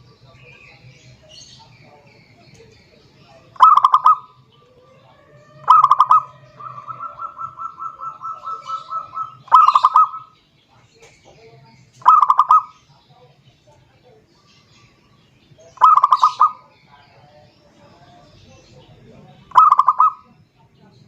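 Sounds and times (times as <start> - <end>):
dove cooing: 3.2 - 10.4, 12.0 - 12.8, 15.7 - 17.4, 19.4 - 20.4.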